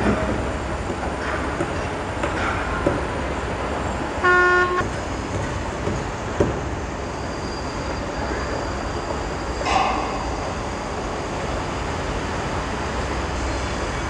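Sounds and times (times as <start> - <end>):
city traffic rumble: 0.0 - 14.0
vehicle horn toot: 4.2 - 4.9.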